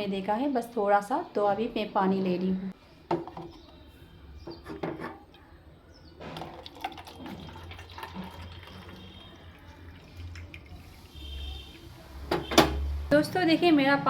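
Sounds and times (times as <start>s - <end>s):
water pouring: 6.3s - 12.5s.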